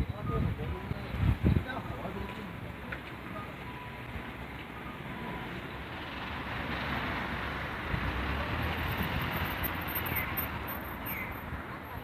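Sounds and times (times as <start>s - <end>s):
vehicle passing by: 5.0s - 12.0s.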